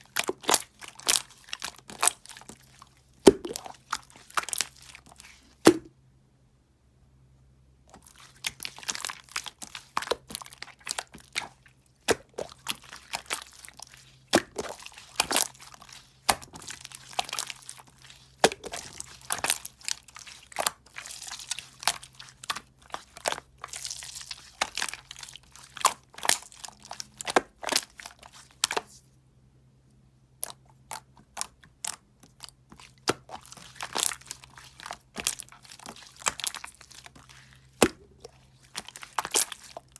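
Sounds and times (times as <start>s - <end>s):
crunching and crackling clicks: 7.9s - 28.9s, 30.4s - 39.9s.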